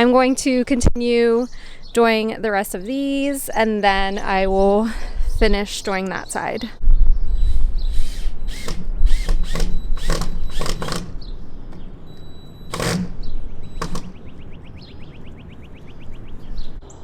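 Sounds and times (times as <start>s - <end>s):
bird trilling: 7.2s - 17.0s
cordless drill driving screws: 7.9s - 14.2s.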